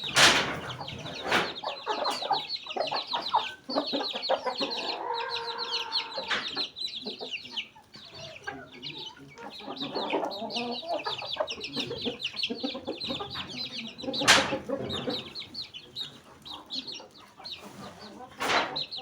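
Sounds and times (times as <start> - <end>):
chickens clucking: 0.0 - 19.0
high peeping chirps: 0.8 - 19.0.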